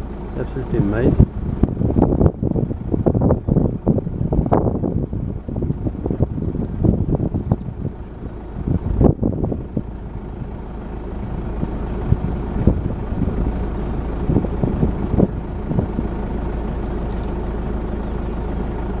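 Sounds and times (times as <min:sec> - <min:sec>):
vehicle engine idling: 0:00.0 - 0:19.0.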